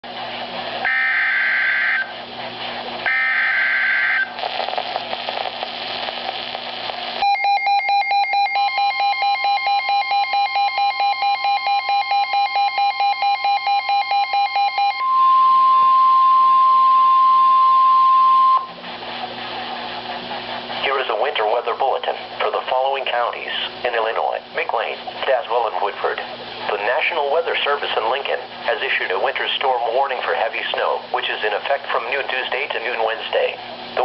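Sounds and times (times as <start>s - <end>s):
radio static: 0.7s - 7.3s, 18.7s - 34.0s
steady warning tone: 0.8s - 2.2s, 3.0s - 4.7s, 7.2s - 23.4s
rapid pulsing alarm beeps: 0.9s - 2.1s, 3.1s - 4.3s, 7.2s - 18.7s.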